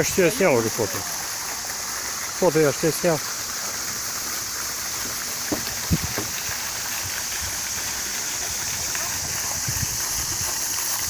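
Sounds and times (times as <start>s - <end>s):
water rushing: 0.0s - 11.0s
soft low thumps: 5.0s - 6.4s.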